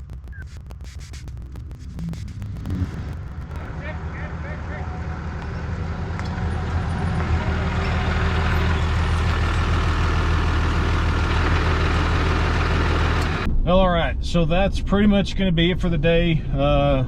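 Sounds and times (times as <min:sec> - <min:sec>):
pickup truck engine running: 0:00.0 - 0:13.5
road noise inside cab: 0:00.0 - 0:13.5.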